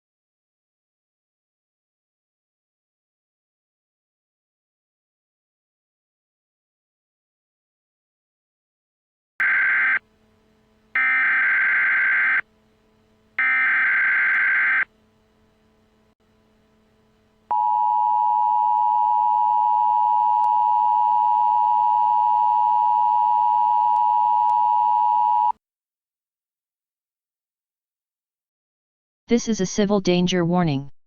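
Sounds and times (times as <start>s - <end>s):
screechy digital data tones: 11.0s - 12.4s, 13.4s - 14.9s.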